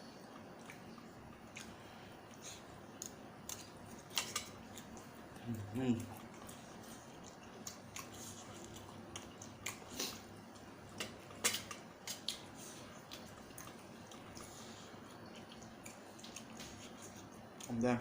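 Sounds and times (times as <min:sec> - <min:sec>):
mouth smacks while eating: 0:06.1 - 0:17.8.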